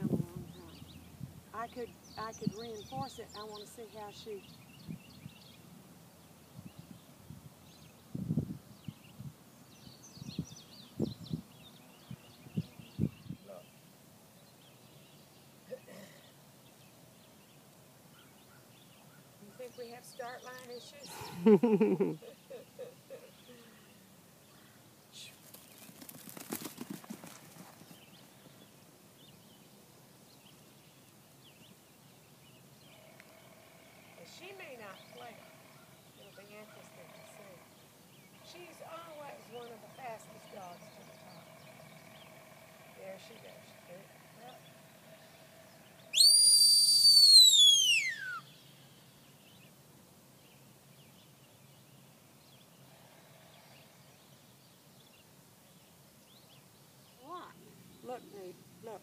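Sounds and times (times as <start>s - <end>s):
faint outdoor background: 0.0s - 59.0s
high whistle sliding down: 46.2s - 48.4s.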